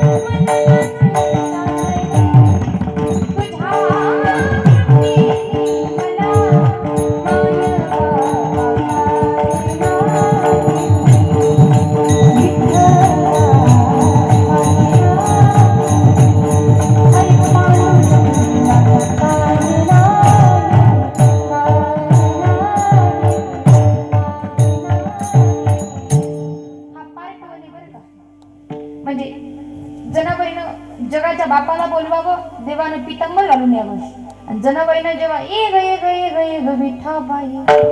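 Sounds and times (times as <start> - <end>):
held drone: 0.0 - 25.4
hand drum strokes: 0.0 - 27.0
jingling hand cymbals: 0.0 - 37.9
wavering melody: 0.0 - 37.9.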